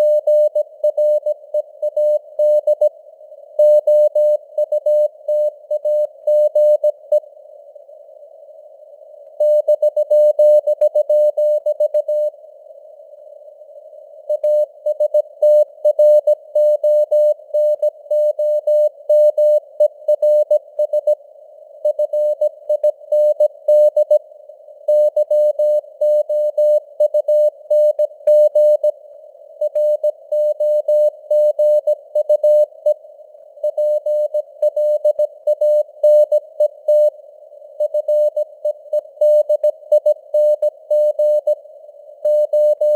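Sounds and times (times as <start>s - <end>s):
morse code tone: 42.3s - 42.9s.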